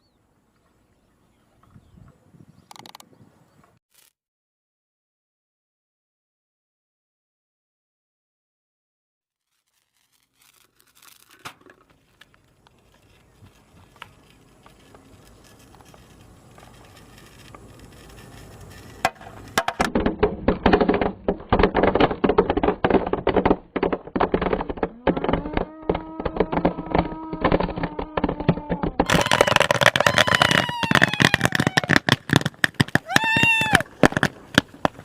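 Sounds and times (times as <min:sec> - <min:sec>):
burning fuse crackling: 0:09.4 - 0:19.6, 0:29.0 - 0:35.0
firecrackers popping: 0:09.5 - 0:35.0.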